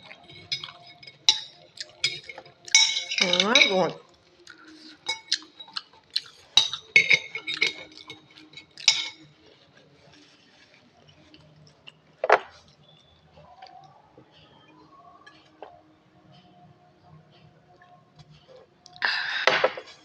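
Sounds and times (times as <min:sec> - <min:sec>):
cutlery clinking against dishes: 0:00.0 - 0:04.0, 0:04.6 - 0:09.7.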